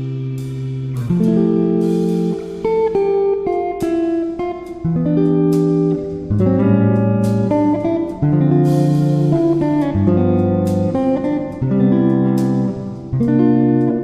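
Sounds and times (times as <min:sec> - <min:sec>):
plucked guitar music: 0:00.0 - 0:14.0
low bass line: 0:06.2 - 0:14.0.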